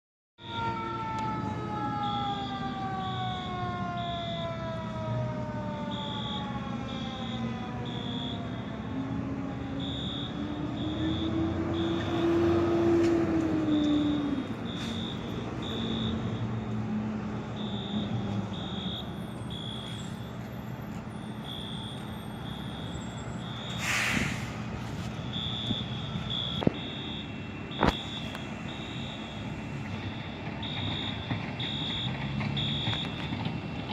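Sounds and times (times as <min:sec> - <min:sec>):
fire truck siren wailing: 0:00.4 - 0:33.9
fire truck engine rumble: 0:00.5 - 0:33.9.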